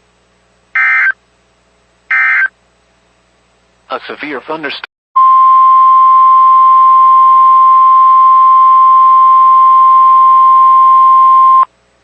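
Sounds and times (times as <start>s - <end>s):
high-pitched alarm tone: 0.8s - 1.2s, 2.1s - 2.5s.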